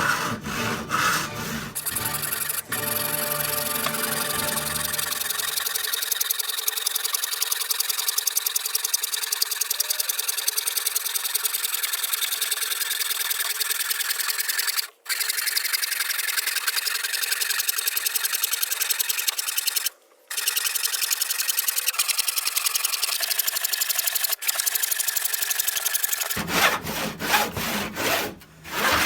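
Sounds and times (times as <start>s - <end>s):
jigsaw cutting board: 0.0s - 7.1s, 24.0s - 29.0s.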